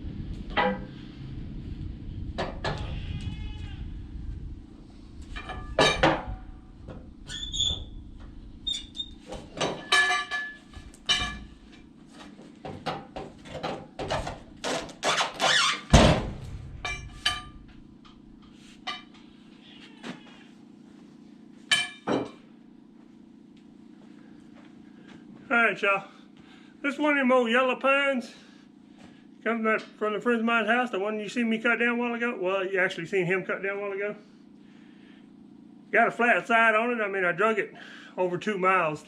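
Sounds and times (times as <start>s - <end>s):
steady low hum: 0.0s - 39.0s
hard objects knocking and clanking: 5.3s - 7.0s, 9.3s - 11.6s, 12.6s - 15.0s.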